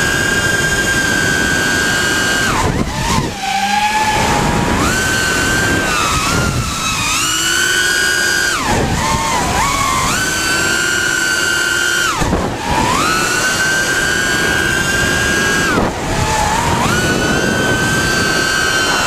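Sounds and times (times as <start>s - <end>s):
wind rushing: 0.0s - 7.6s
drone motors whining: 0.0s - 19.0s.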